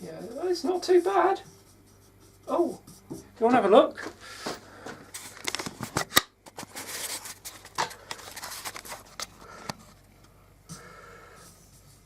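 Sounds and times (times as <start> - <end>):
handling rustling and scraping: 4.1 - 10.1.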